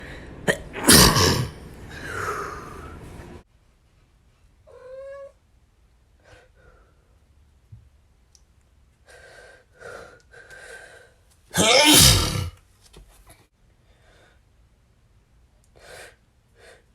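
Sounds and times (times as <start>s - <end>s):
man sneezing: 0.8s - 1.6s, 11.6s - 12.5s.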